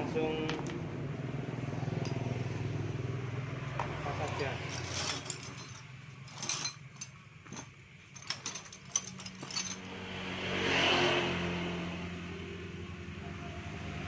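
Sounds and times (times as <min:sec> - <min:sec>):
hand tools clicking on metal: 0:04.3 - 0:09.8.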